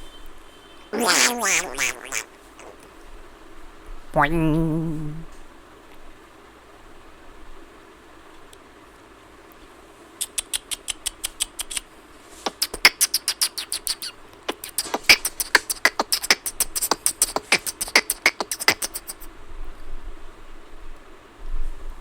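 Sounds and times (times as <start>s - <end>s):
beatboxed mouth clicks: 1.0s - 2.9s, 4.2s - 5.3s, 10.2s - 19.3s.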